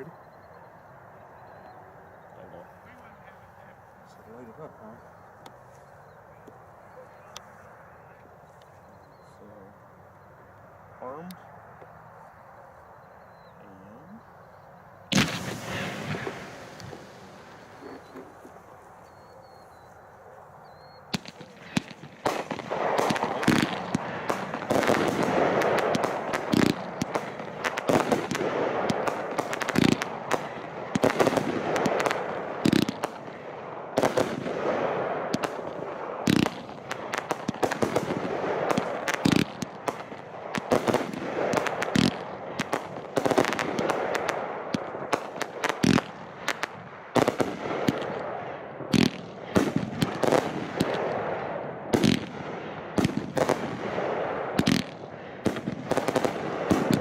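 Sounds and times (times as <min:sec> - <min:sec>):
fireworks crackling and banging: 0:15.1 - 0:19.2, 0:21.1 - 0:57.0.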